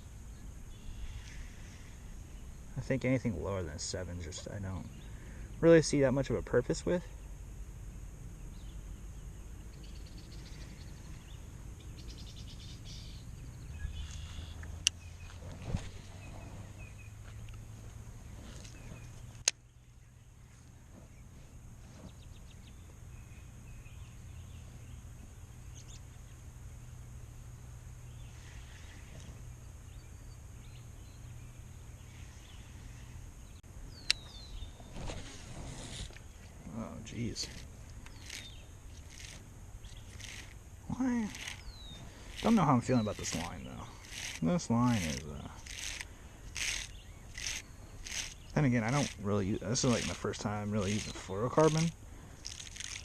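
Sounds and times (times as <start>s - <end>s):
birds chirping: 0.0s - 53.0s
low outdoor rumble: 0.0s - 53.0s
sharp click: 34.0s - 34.4s.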